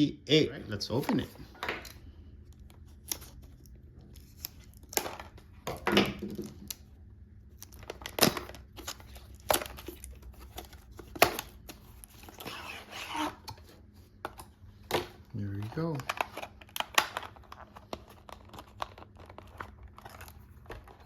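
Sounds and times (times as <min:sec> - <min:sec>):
packaging rustling and crinkling: 0:15.4 - 0:21.0.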